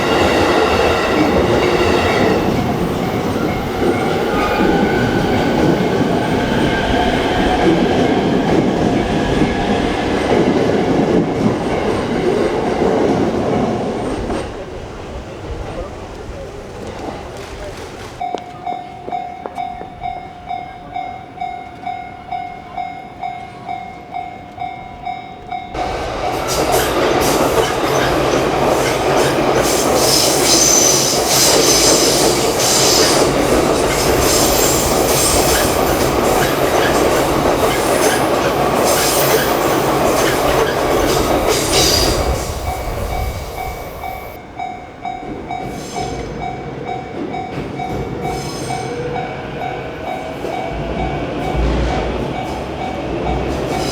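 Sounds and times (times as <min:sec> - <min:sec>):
train wheels on rails: 0:00.0 - 0:53.9
level-crossing bell clanging: 0:18.2 - 0:53.9.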